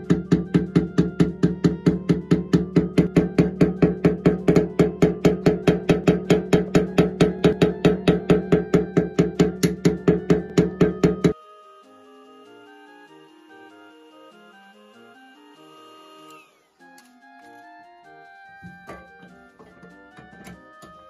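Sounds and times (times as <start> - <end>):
background music: 0.0 - 21.0
tapping on metal fuel tank: 0.1 - 11.4, 18.6 - 21.0.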